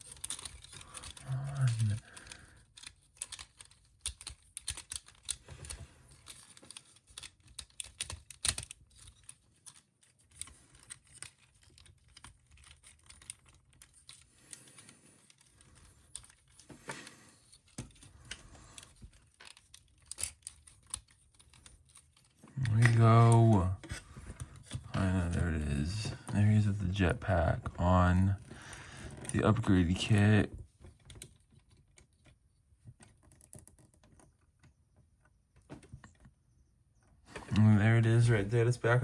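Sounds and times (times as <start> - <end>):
plastic figure parts clicking: 0.0 - 26.8.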